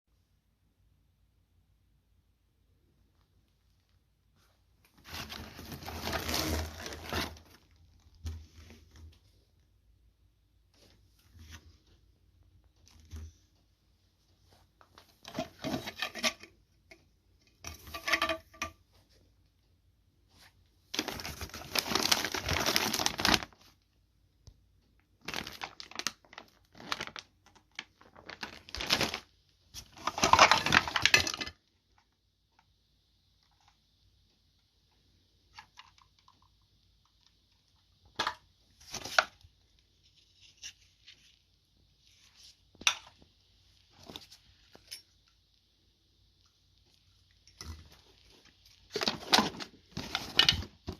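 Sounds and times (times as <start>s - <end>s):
faint steady hiss: 0.1s - 50.9s
rustling and clattering: 47.6s - 50.9s.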